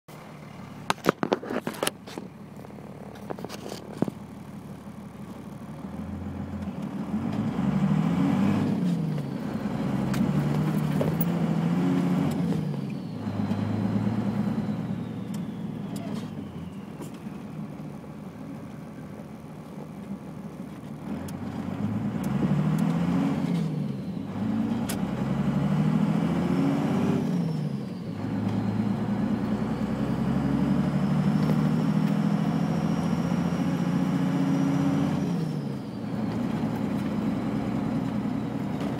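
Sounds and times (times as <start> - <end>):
diesel engine accelerating: 0.1 - 38.9
turbocharger whistle: 11.2 - 17.6, 22.7 - 36.2.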